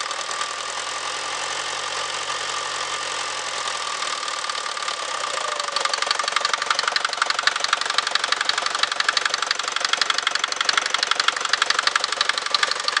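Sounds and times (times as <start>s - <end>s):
diesel engine running: 0.0s - 13.0s
rapid engine knock: 4.1s - 13.0s.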